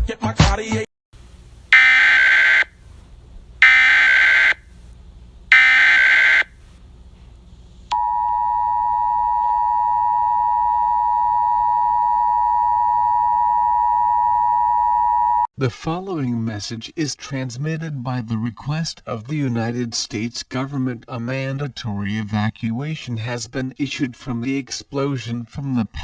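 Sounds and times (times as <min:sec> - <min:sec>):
two-tone alert signal: 0:05.5 - 0:06.5.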